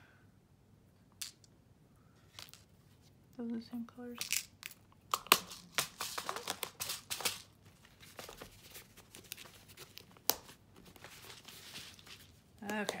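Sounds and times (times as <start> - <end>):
packaging crinkling: 5.1 - 13.0.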